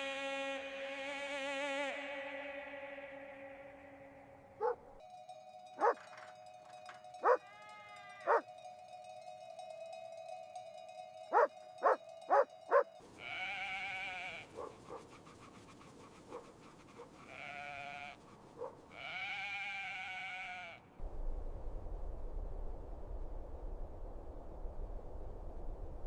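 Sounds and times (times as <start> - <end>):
wavering bleat-like cries: 0.0 - 4.8, 7.2 - 8.6, 11.4 - 14.7, 17.2 - 18.2, 18.9 - 21.0
animal yelps: 4.6 - 4.8, 5.8 - 6.0, 7.2 - 8.5, 11.4 - 12.9.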